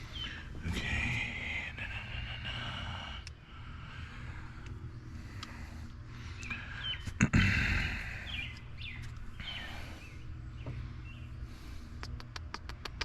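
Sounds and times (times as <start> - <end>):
birds chirping: 0.0 - 13.0
steady low hum: 0.0 - 13.0
sharp clicks: 12.0 - 13.0.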